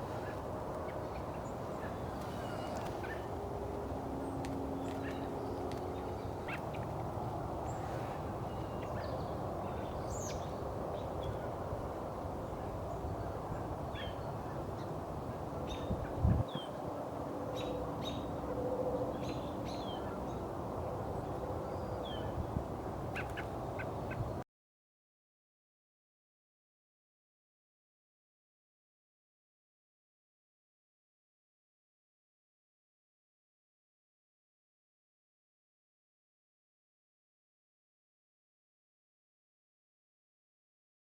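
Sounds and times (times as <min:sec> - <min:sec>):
small songbirds chirping: 0:04.2 - 0:11.6.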